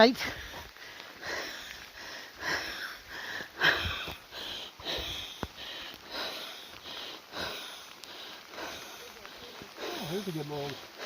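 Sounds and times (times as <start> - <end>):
person sniffing and breathing: 0.3 - 9.0.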